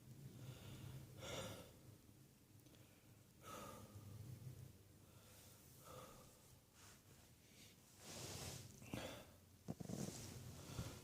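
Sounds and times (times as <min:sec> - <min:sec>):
person breathing faintly: 0:00.2 - 0:01.8, 0:02.7 - 0:04.4, 0:05.0 - 0:09.4, 0:10.0 - 0:11.0.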